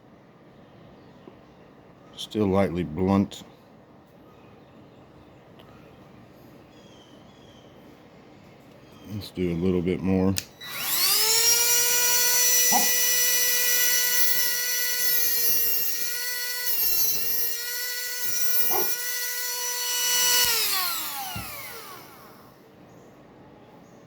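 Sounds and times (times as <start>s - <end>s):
grinder motor whining: 10.6s - 22.6s.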